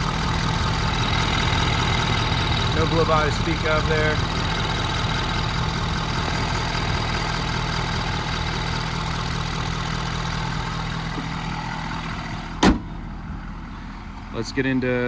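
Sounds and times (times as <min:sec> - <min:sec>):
diesel engine idling: 0:00.0 - 0:15.0
sharp bang: 0:12.6 - 0:13.0.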